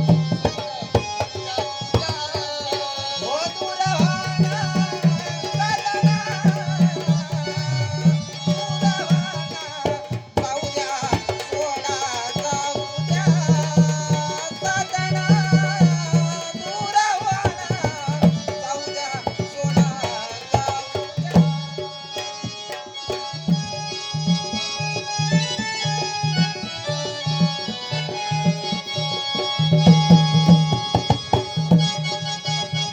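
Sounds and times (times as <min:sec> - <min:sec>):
hand drums rhythm: 0:00.0 - 0:32.9.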